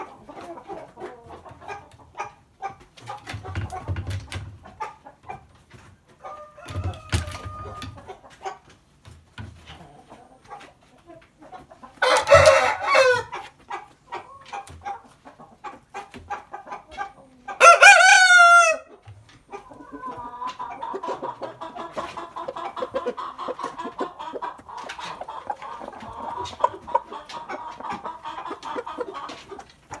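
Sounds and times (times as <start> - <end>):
chickens clucking: 0.0 - 30.0
rooster crowing: 12.0 - 13.3, 17.6 - 18.9.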